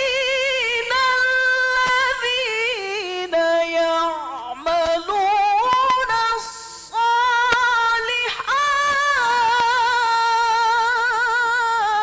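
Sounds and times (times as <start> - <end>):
man reciting in melodic chant: 0.0 - 12.0
short breath: 6.6 - 7.0.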